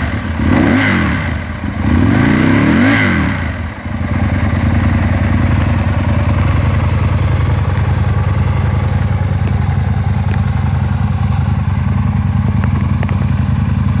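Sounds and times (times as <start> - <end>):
motorcycle engine idling: 0.0 - 14.0.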